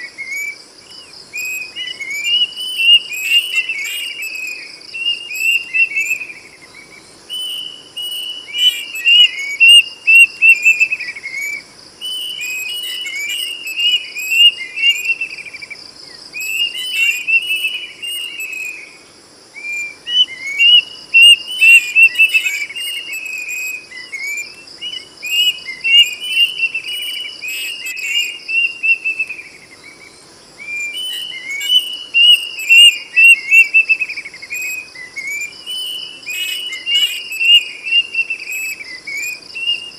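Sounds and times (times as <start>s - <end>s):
high-pitched pulsing insect drone: 0.0s - 39.9s.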